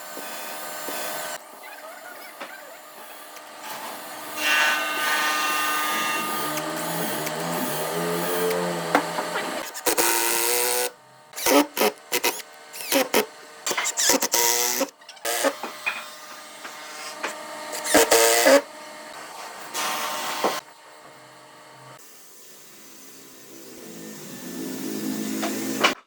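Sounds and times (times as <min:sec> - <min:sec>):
power tool motor bursts: 0:03.1 - 0:16.0, 0:17.0 - 0:18.7.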